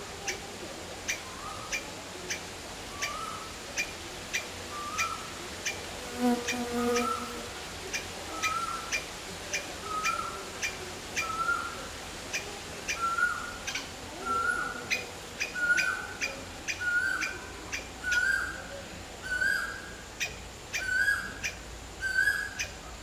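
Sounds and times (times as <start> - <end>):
bird calling: 1.1 - 5.3, 7.9 - 9.0, 9.6 - 18.6, 19.3 - 22.8.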